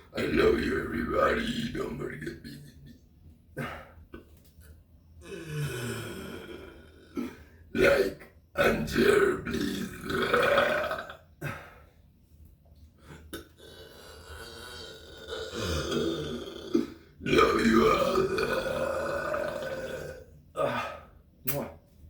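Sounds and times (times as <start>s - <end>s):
man burping: 5.2s - 11.7s, 13.3s - 21.1s.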